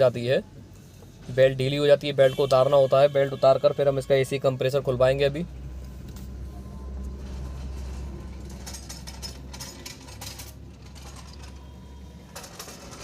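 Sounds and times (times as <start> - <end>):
hand tools clinking on metal: 8.4 - 11.7.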